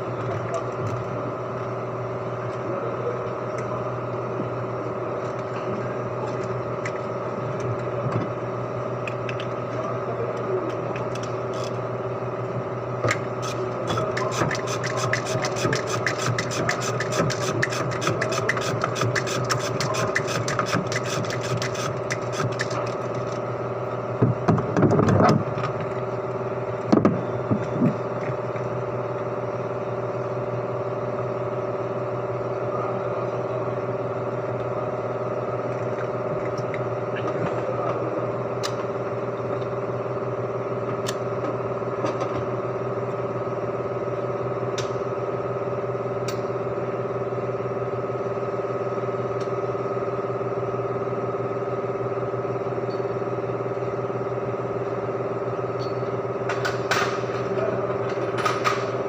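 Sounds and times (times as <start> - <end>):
mechanical hum: 0.0 - 59.0
rubbing and scraping strokes: 14.4 - 22.9.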